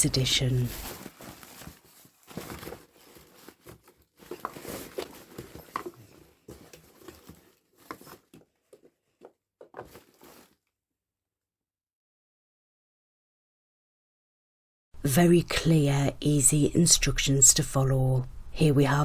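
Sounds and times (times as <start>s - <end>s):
rustling of items being handled: 0.0s - 10.7s.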